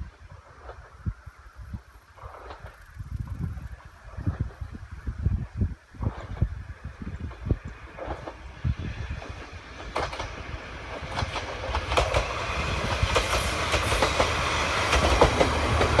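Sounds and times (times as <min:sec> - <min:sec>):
low railcar rumble: 0:00.0 - 0:16.0
train wheels clacking over rail joints: 0:07.2 - 0:16.0.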